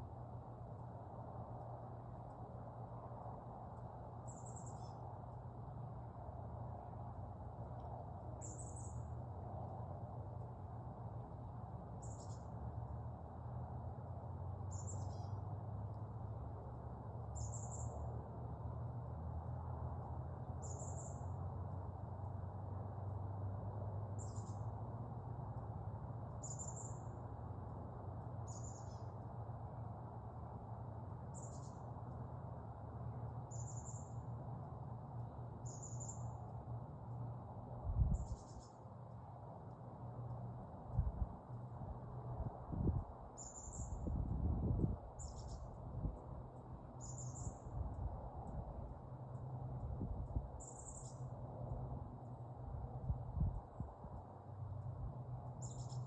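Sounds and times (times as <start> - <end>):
bird high calls: 28.5 - 29.0, 47.0 - 47.6.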